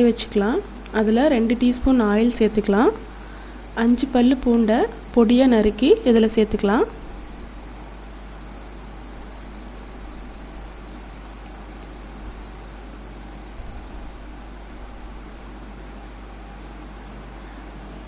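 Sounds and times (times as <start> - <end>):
high-pitched whine: 0.0 - 14.2.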